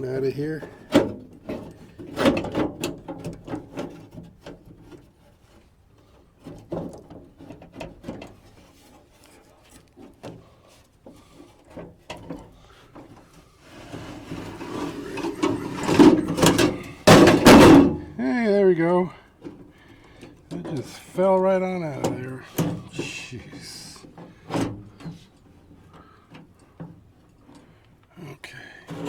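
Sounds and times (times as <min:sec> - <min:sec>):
loose metal parts rattling: 0:13.8 - 0:18.4.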